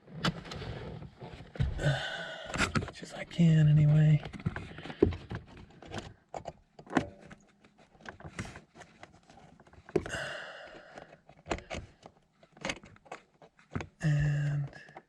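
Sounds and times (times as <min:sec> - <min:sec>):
clicks and knocks of hands working: 0:04.2 - 0:15.0.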